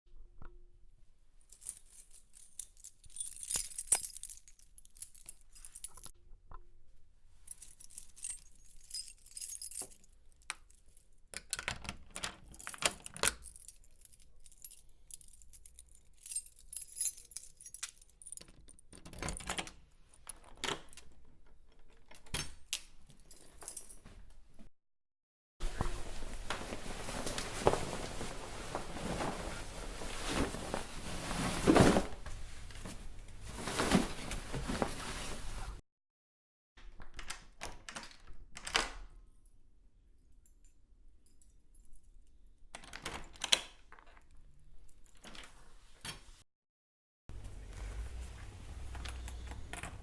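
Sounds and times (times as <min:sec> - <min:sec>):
small metal objects jingling: 0:01.6 - 0:06.1, 0:07.5 - 0:10.2.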